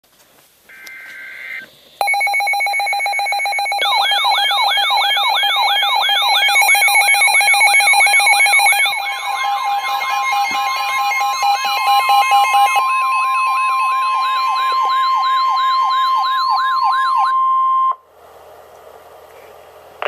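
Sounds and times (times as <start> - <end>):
digital data tones: 0.7 - 16.8
siren-like sweep: 3.7 - 18.0.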